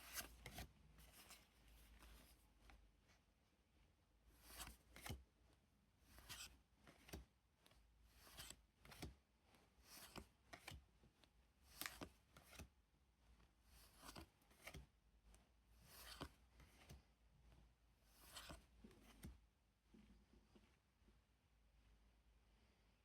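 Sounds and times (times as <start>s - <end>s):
trading cards sliding: 0.0s - 2.3s, 11.7s - 12.6s, 13.8s - 14.8s, 15.8s - 17.0s, 18.1s - 19.3s.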